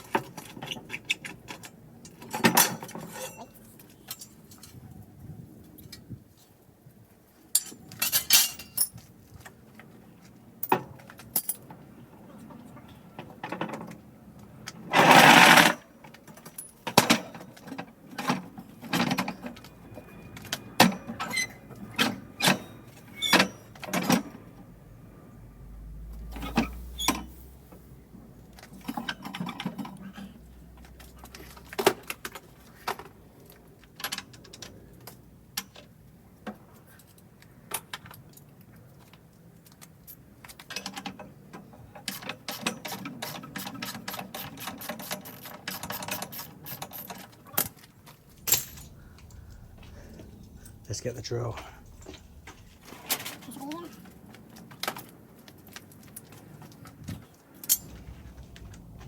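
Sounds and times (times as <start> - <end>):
metal parts clanking: 44.1 - 55.1, 57.6 - 59.0.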